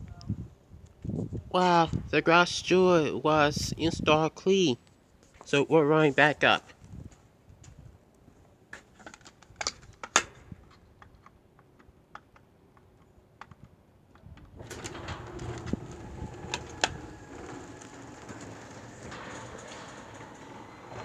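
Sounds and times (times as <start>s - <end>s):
garage door opener humming: 14.6s - 21.0s.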